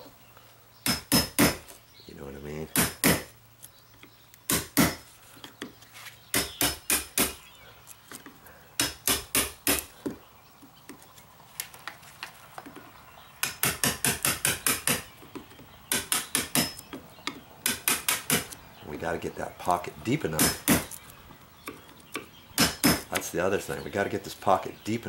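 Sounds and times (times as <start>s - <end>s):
hammer tapping wood chisel: 12.6s - 18.6s, 20.4s - 21.0s, 21.6s - 23.3s.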